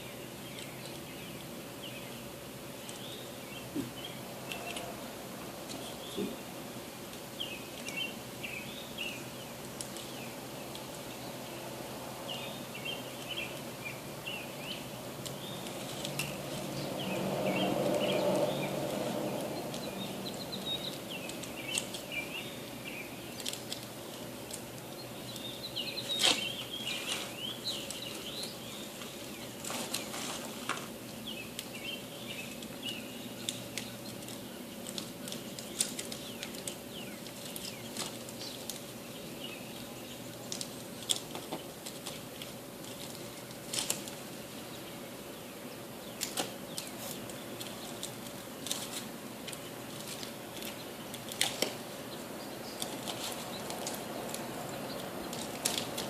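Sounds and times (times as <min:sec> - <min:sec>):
birds chirping: 0:00.0 - 0:56.0
steady low hum: 0:00.0 - 0:56.0.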